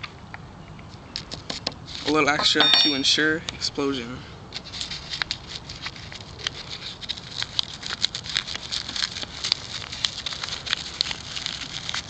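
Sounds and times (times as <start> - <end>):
spoon ticking and paper rustling: 4.6 - 12.0.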